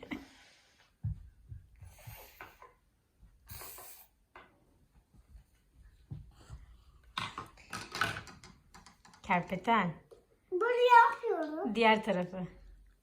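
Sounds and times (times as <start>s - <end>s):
plastic toy knocks and rubbing: 7.2s - 9.3s.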